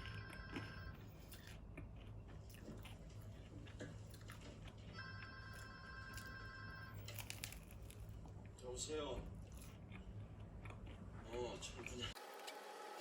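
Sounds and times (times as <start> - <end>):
telephone ringing: 0.0 - 1.0, 4.9 - 7.1.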